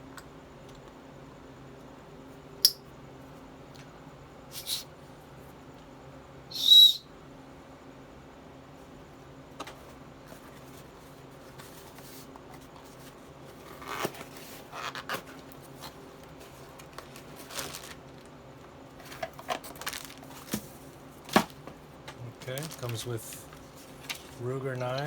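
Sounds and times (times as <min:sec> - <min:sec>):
package being handled and opened: 0:12.8 - 0:18.4, 0:19.0 - 0:25.0.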